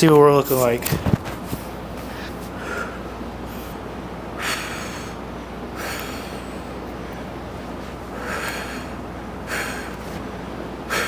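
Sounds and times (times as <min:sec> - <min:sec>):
steady low hum: 0:00.0 - 0:11.0
man breathing out hard: 0:05.8 - 0:06.8, 0:08.1 - 0:10.2.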